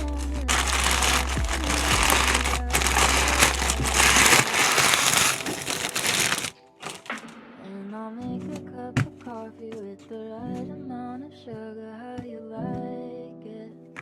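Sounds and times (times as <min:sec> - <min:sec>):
packaging crinkling: 0:00.0 - 0:07.2
background music: 0:00.0 - 0:14.0.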